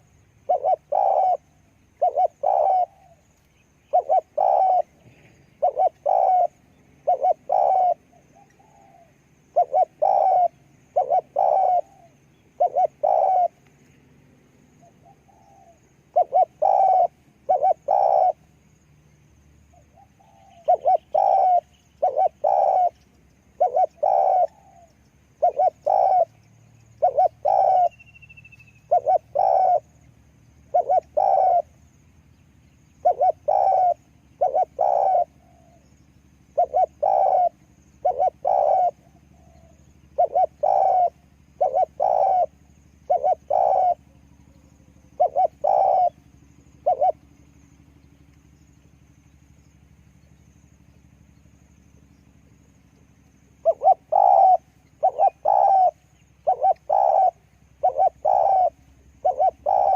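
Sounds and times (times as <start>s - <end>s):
dove cooing: 0.0s - 18.6s, 19.7s - 31.9s, 32.6s - 49.0s, 52.0s - 59.9s.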